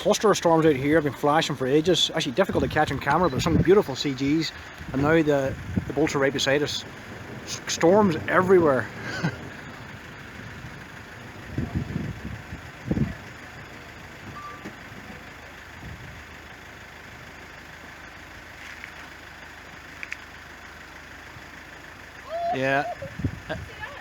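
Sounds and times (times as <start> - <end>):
steady outdoor hiss: 0.0 - 24.0
thunder rumbling: 1.0 - 16.5.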